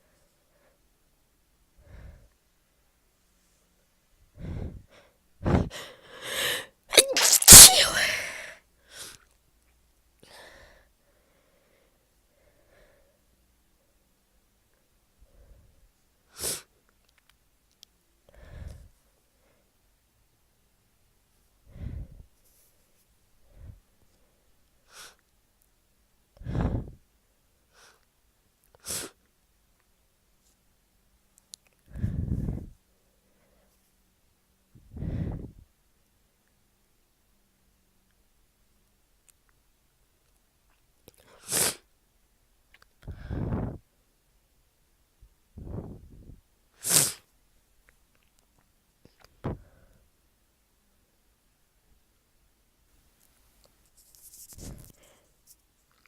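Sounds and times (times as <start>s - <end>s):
heavy breathy exhales: 4.4s - 6.7s, 21.7s - 22.2s, 34.9s - 35.6s
person breathing in: 4.4s - 9.2s
person sneezing: 6.3s - 8.6s, 46.8s - 47.2s
congested nose sniffing: 7.0s - 8.0s, 41.4s - 41.8s, 46.8s - 47.3s
faint sniffs: 18.3s - 19.7s, 26.4s - 27.0s, 27.7s - 28.1s, 28.8s - 29.2s, 34.9s - 35.6s, 41.2s - 41.9s, 46.8s - 47.3s, 53.8s - 55.6s.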